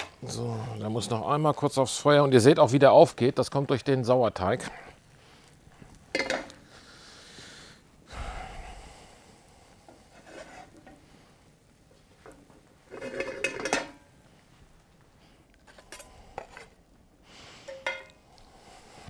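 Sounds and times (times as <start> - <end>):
frying pan clattering: 6.0 - 6.7, 12.2 - 14.1, 17.6 - 18.2
pan scraping: 9.9 - 11.0, 12.2 - 14.1.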